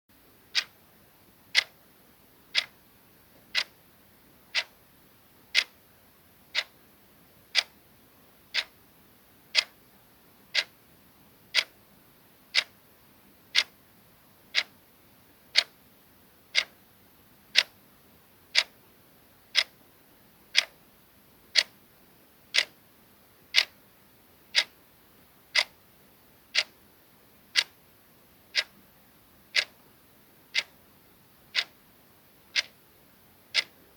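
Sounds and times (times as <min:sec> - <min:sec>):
clock ticking: 0:00.5 - 0:00.8, 0:01.5 - 0:01.8, 0:02.5 - 0:02.7, 0:03.5 - 0:03.8, 0:04.5 - 0:04.8, 0:05.5 - 0:05.8, 0:06.5 - 0:06.8, 0:07.5 - 0:07.7, 0:08.5 - 0:08.8, 0:09.5 - 0:09.8, 0:10.5 - 0:10.7, 0:11.5 - 0:11.8, 0:12.5 - 0:12.7, 0:13.5 - 0:13.8, 0:14.5 - 0:14.7, 0:15.5 - 0:15.8, 0:16.5 - 0:16.8, 0:17.5 - 0:17.8, 0:18.5 - 0:18.8, 0:19.5 - 0:19.8, 0:20.5 - 0:20.8, 0:21.5 - 0:21.7, 0:22.5 - 0:22.8, 0:23.5 - 0:23.8, 0:24.5 - 0:24.8, 0:25.5 - 0:25.8, 0:26.5 - 0:26.8, 0:27.5 - 0:27.8, 0:28.5 - 0:28.8, 0:29.5 - 0:29.9, 0:30.5 - 0:30.8, 0:31.5 - 0:31.8, 0:32.5 - 0:32.8, 0:33.5 - 0:33.9.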